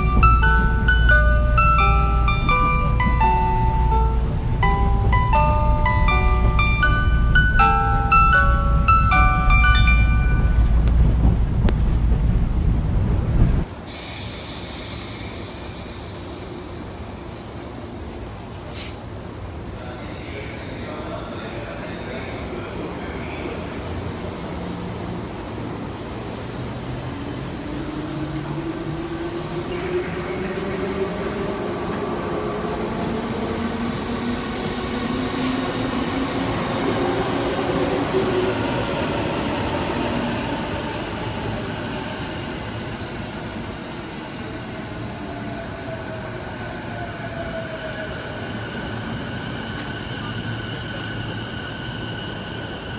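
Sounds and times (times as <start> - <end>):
train running rumble: 0.0 - 17.0.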